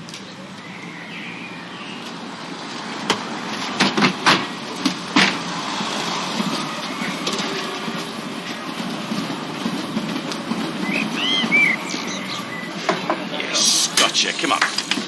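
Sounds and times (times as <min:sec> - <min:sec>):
background traffic noise: 0:00.0 - 0:15.0
sharp knocks and clatters: 0:03.0 - 0:05.4.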